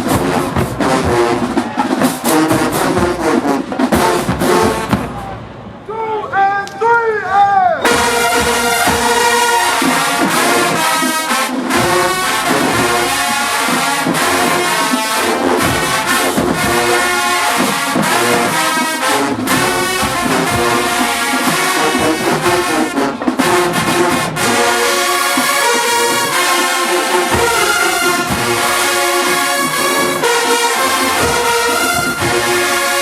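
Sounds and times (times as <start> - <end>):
marching band brass playing: 0.0 - 5.9, 7.8 - 33.0
sharp drum hits: 7.8 - 10.6.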